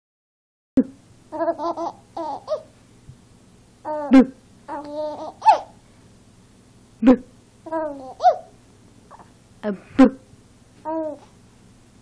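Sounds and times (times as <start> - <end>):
baby laughing and squealing: 1.3 - 2.7, 4.7 - 5.8, 7.7 - 8.5.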